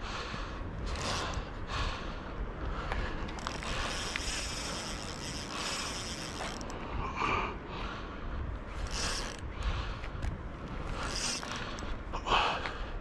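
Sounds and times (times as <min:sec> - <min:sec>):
fishing reel clicking and whirring: 0:00.9 - 0:01.4, 0:03.3 - 0:06.8, 0:08.7 - 0:12.0.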